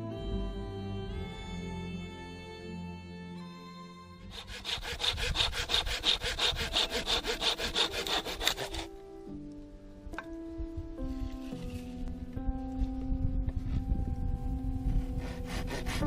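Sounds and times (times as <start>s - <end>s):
hand saw cutting wood: 4.3s - 8.9s, 15.2s - 16.0s.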